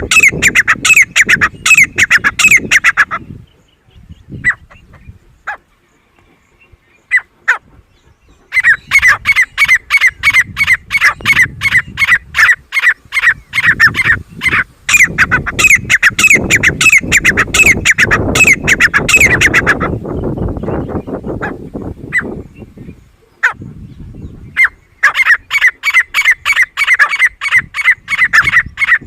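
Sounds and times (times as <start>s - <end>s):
francolin calling: 0.0s - 5.6s, 8.4s - 21.2s, 24.4s - 29.0s.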